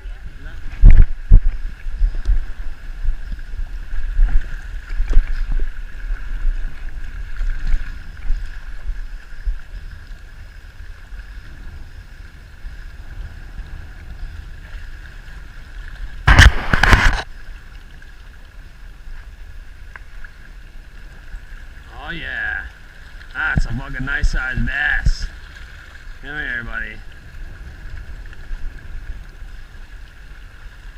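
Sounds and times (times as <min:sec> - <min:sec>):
wind buffeting microphone: 0:00.0 - 0:17.4, 0:22.5 - 0:30.9
brief rush of noise: 0:16.3 - 0:17.2.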